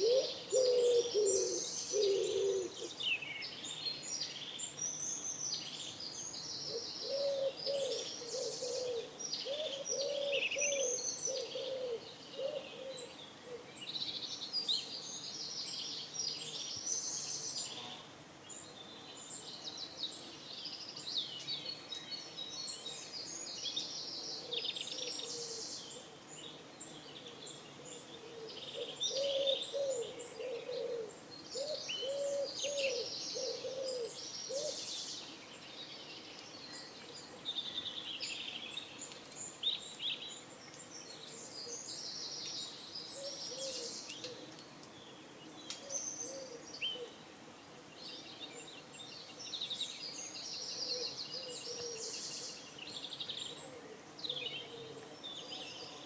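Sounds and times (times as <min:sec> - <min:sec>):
pigeons cooing: 0:00.0 - 0:03.0, 0:06.7 - 0:13.7, 0:28.2 - 0:34.8, 0:43.2 - 0:44.4, 0:45.9 - 0:47.1, 0:50.8 - 0:52.1
songbirds chirping and trilling: 0:00.0 - 0:56.0.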